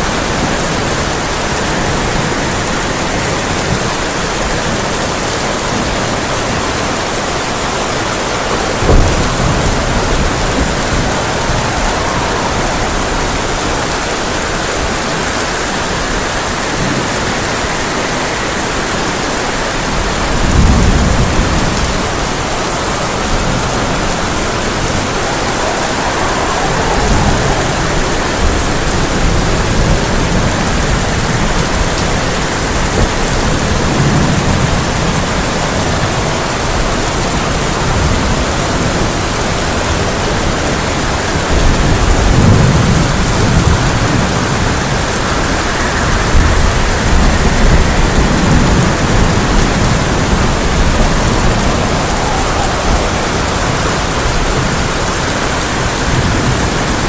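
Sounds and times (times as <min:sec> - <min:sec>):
heavy rain on a tin roof: 0:00.0 - 0:57.0
thunder rolling: 0:00.0 - 0:57.0.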